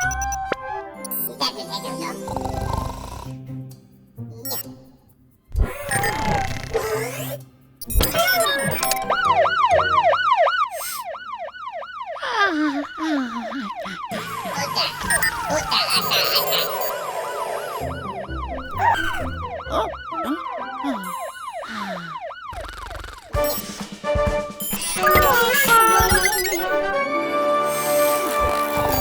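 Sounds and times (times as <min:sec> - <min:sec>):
cartoon siren yelping: 0:00.0 - 0:01.5, 0:08.0 - 0:23.5, 0:24.8 - 0:26.9
busy music: 0:00.0 - 0:02.3, 0:08.6 - 0:10.4, 0:14.2 - 0:22.0, 0:23.3 - 0:29.0
chimes: 0:14.3 - 0:22.0
falling whistle glides: 0:15.1 - 0:22.0.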